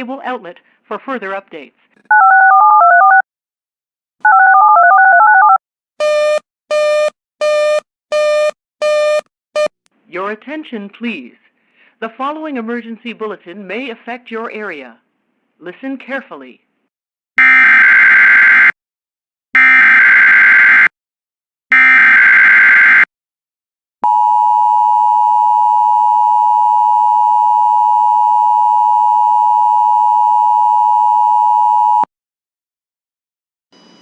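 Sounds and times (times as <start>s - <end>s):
steady attention tone: 6.0s - 9.7s.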